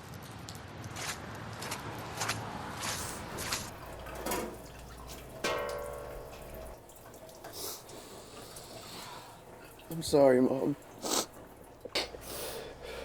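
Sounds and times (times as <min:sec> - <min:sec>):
water running and dripping: 0:03.2 - 0:13.0
dishes clinking: 0:03.7 - 0:10.0
ringing clank of a dish: 0:05.5 - 0:06.4.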